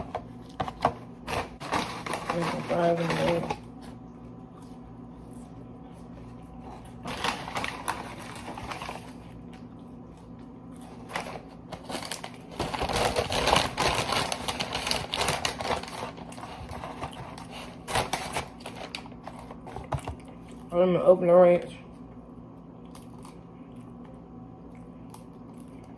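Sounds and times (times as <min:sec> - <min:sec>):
takeout packaging rustling and crinkling: 0:00.0 - 0:04.0, 0:06.0 - 0:09.6, 0:10.8 - 0:20.4
faint low hum: 0:00.0 - 0:25.9.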